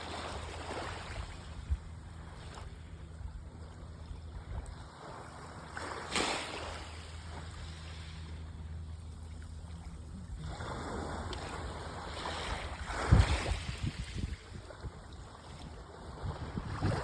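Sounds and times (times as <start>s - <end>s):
steady low hum: 0.0s - 17.0s
wind buffeting microphone: 12.6s - 17.0s.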